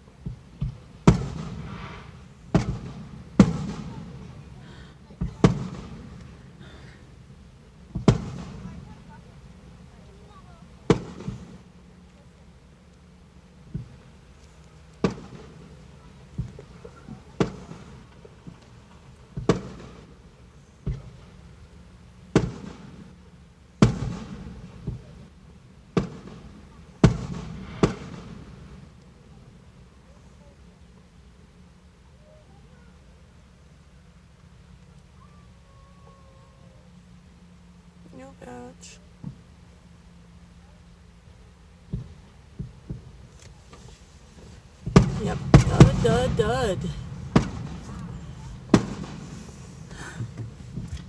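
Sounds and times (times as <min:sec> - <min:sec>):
fireworks booming: 0:00.2 - 0:09.2, 0:10.8 - 0:11.7, 0:15.0 - 0:21.6, 0:22.3 - 0:23.2, 0:23.8 - 0:25.2, 0:25.9 - 0:28.9, 0:41.9 - 0:51.0
rolling echo: 0:44.8 - 0:51.0.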